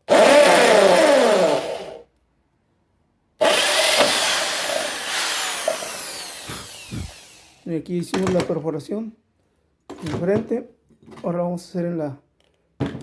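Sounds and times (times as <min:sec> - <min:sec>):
electric drill boring metal: 0:00.1 - 0:02.0, 0:03.4 - 0:07.6.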